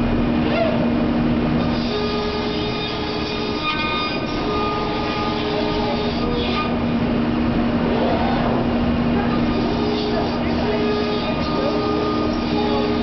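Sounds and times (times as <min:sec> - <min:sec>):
cnc router drone: 0:00.0 - 0:13.0.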